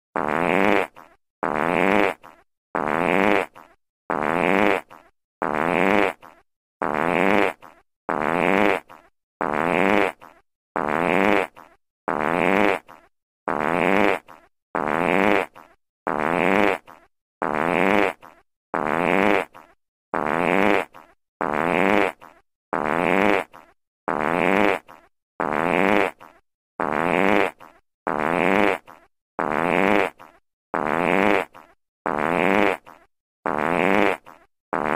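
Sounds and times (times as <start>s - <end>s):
fart sound effect: 0.2s - 34.9s.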